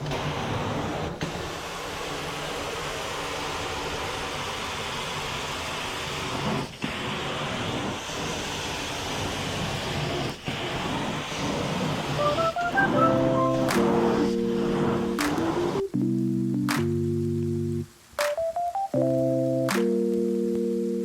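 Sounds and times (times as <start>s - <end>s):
carpet cleaner suction: 0.0s - 12.2s, 13.5s - 15.8s.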